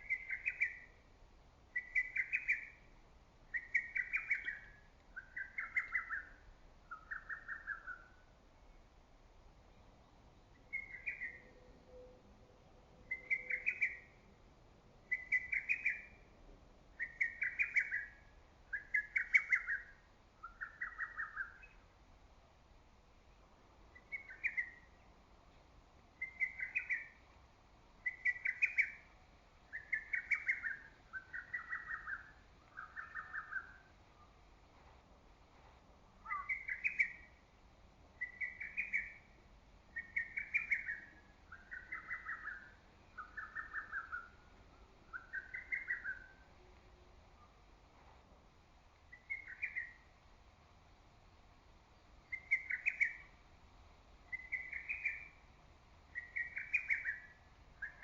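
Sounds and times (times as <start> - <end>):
cuckoo singing: 13.1 - 14.1.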